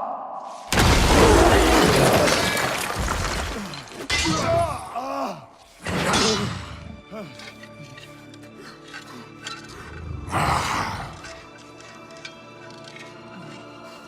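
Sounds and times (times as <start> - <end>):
loud crash with shattering: 0.7 - 4.0.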